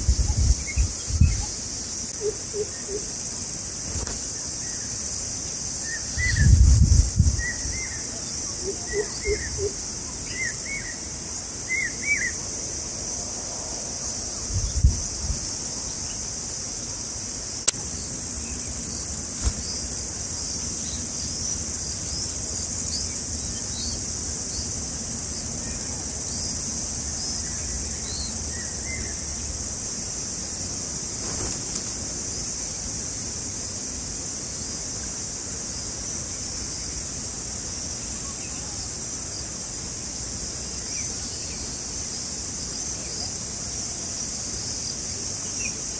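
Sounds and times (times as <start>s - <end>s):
insects buzzing: 0.0s - 45.9s.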